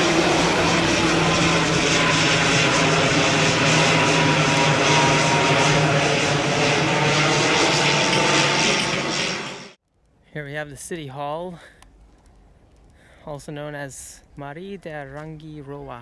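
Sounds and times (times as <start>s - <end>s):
propeller airplane flying overhead: 0.0s - 9.8s.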